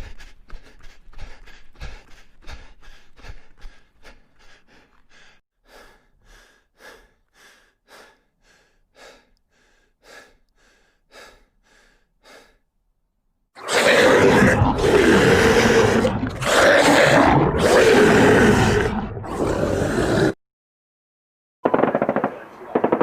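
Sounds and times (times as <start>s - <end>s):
rapid heavy breathing: 0.0s - 12.7s.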